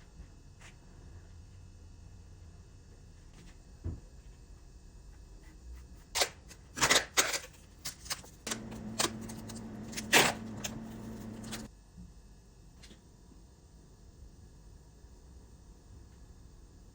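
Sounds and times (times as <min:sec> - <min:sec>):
steady low hum: 0:08.3 - 0:11.7.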